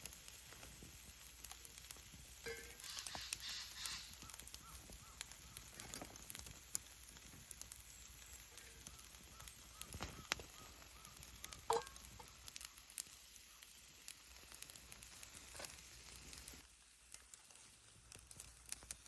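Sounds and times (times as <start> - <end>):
campfire crackling: 0.0 - 19.0
short hiss: 2.5 - 4.2.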